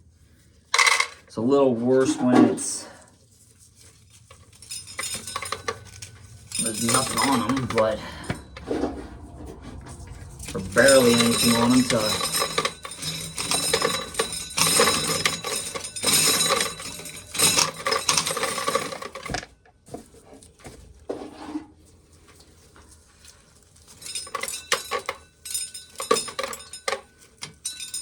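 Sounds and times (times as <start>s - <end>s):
corn kernels rattling into container: 4.8s - 8.0s, 10.4s - 19.4s.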